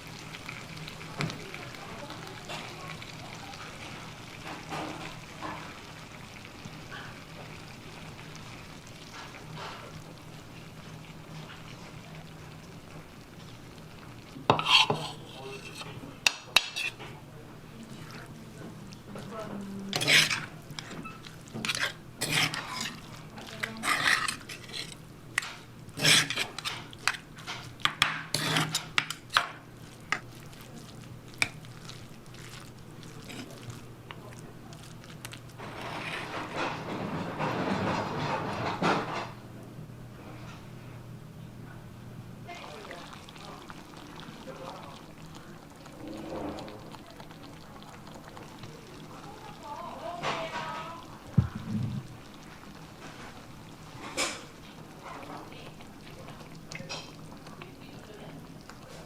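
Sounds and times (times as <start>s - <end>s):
food sizzling in a pan: 0.0s - 38.1s, 42.4s - 59.0s
utensils scraping in a dish: 14.5s - 17.2s, 19.9s - 30.3s, 32.4s - 33.8s, 35.2s - 39.4s
low hum: 51.4s - 52.2s.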